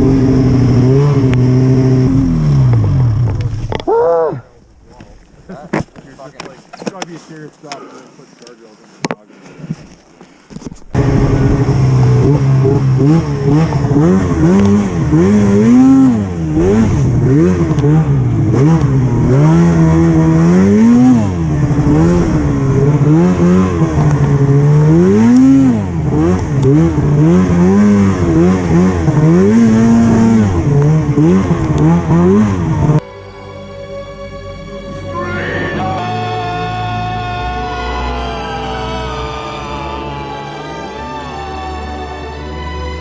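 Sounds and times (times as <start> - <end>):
snowmobile engine revving: 0.0 - 4.4, 10.9 - 33.0, 35.1 - 43.0.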